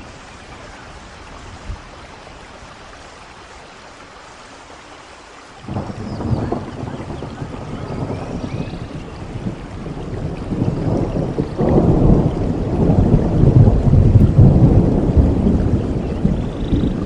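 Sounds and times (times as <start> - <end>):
rain hissing: 0.0 - 17.0
thunder rumbling: 5.6 - 17.0.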